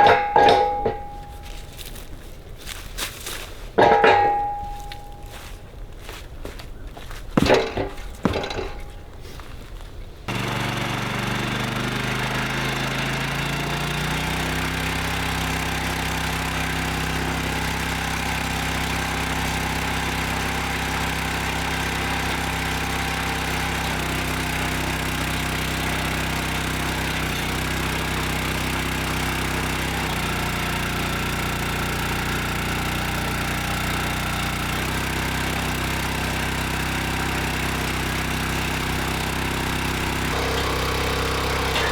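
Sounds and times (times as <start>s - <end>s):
small gasoline engine running: 0.0s - 1.9s, 7.4s - 8.9s, 10.3s - 41.9s.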